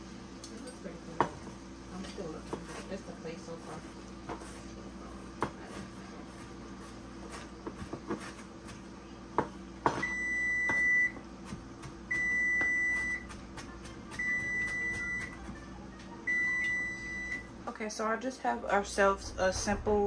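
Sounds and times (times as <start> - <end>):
low steady hum: 0.0 - 20.0
appliance beeper alert: 10.0 - 11.2, 12.1 - 13.3, 14.2 - 15.4, 16.2 - 17.5.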